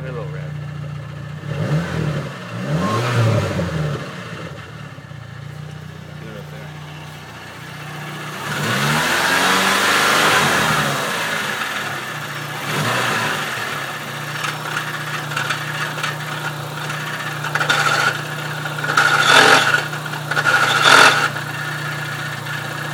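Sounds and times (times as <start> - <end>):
car engine idling and revving: 0.0 - 22.9
short loud mechanical noises: 14.3 - 21.4.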